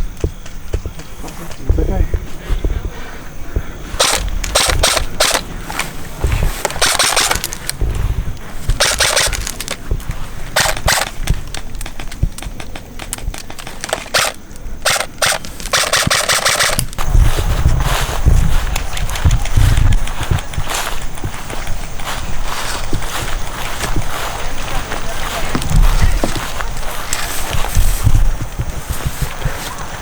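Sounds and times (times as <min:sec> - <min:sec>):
airsoft rifles firing bursts: 0:03.9 - 0:05.6, 0:06.4 - 0:07.8, 0:08.7 - 0:09.8, 0:10.5 - 0:11.3, 0:13.4 - 0:17.0.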